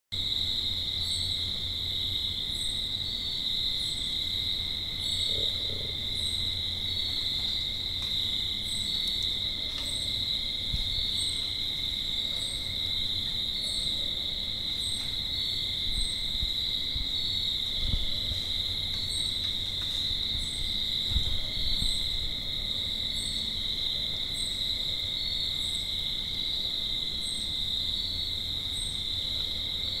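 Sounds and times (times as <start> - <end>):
chorus of calling animals: 5.0 - 6.7.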